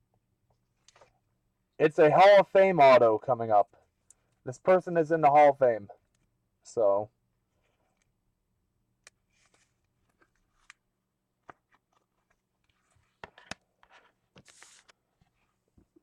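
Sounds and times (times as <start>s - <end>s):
trading cards clicking and rustling: 11.4s - 15.0s.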